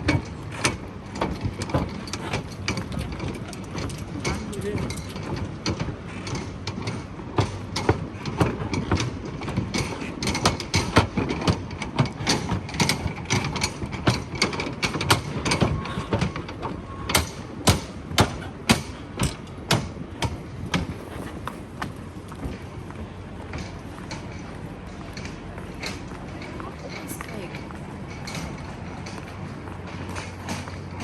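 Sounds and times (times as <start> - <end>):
footsteps on hard paving: 18.8 - 31.0.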